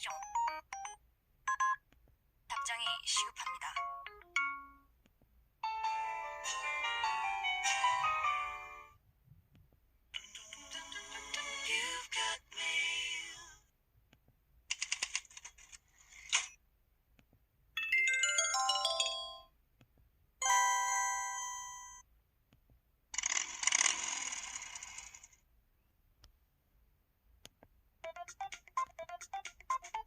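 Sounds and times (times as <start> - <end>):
phone alert tones: 0.0 - 1.8, 20.4 - 22.0.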